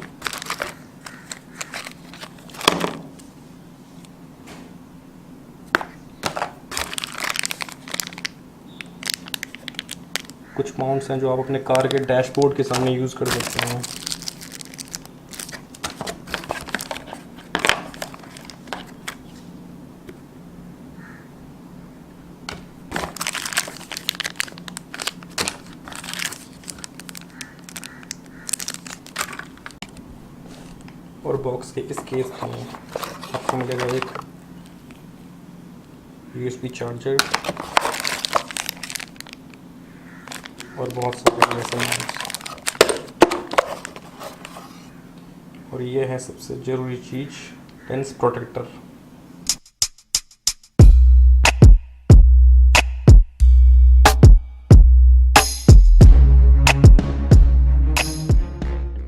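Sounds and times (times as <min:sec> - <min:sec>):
packaging rustling: 0:00.0 - 0:03.3, 0:06.2 - 0:10.6, 0:11.6 - 0:19.5, 0:22.9 - 0:30.9, 0:31.8 - 0:34.8, 0:37.1 - 0:45.0.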